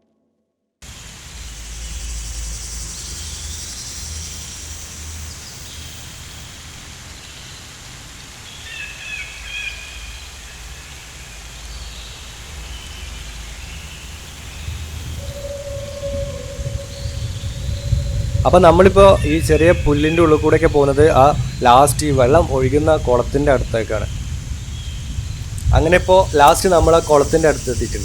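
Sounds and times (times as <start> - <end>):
high insect drone: 0.8 - 28.0
wind rumble on microphone: 11.4 - 28.0
bird chirps: 11.8 - 28.0.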